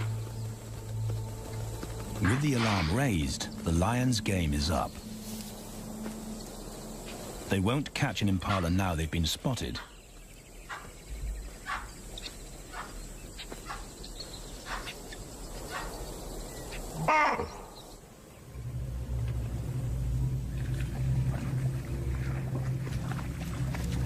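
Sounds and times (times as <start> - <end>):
animal alarm calls: 10.6 - 13.9, 16.9 - 17.8
low steady hum: 18.4 - 24.0.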